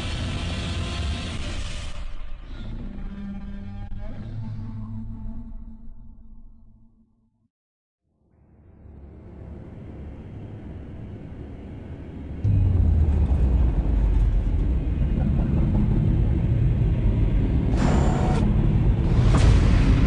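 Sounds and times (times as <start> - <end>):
deep monster rumble: 11.9 - 17.8.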